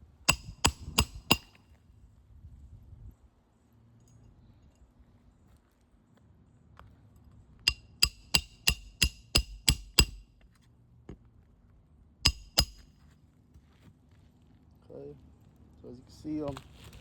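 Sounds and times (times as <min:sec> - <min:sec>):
hammer striking roofing nails: 0:00.3 - 0:01.6, 0:07.7 - 0:10.2, 0:12.3 - 0:12.8.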